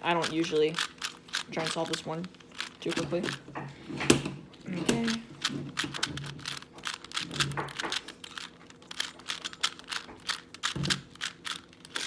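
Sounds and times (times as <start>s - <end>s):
puzzle cube plastic clicks: 0.0s - 12.0s.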